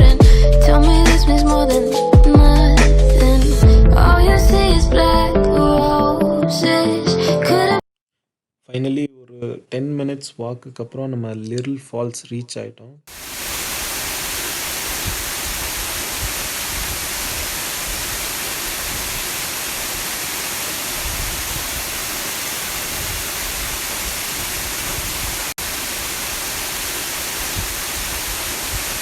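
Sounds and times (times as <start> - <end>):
small waterfall rushing: 13.1 - 29.0.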